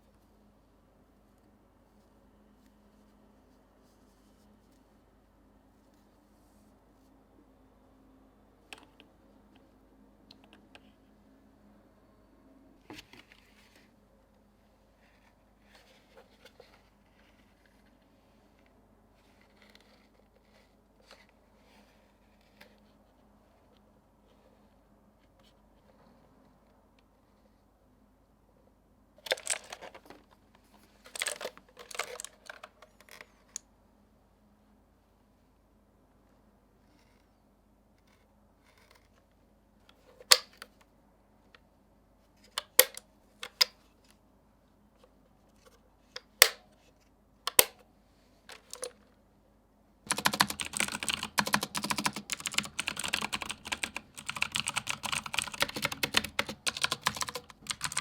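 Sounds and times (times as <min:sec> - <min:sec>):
keyboard and packaging clicks: 0:47.5 - 0:47.8, 0:50.1 - 0:58.0.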